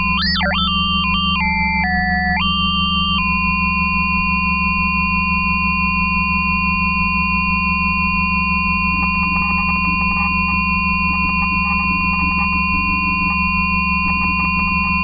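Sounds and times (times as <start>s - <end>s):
rapid flutter of synth tones: 0.0s - 3.2s
synthesizer drone: 0.0s - 3.4s.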